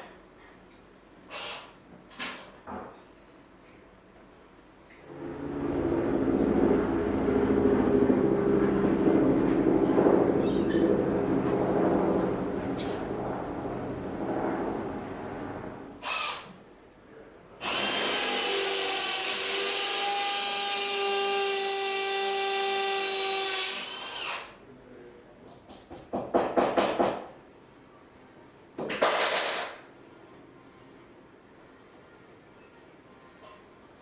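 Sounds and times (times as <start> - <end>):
power drill whining: 17.6 - 24.5.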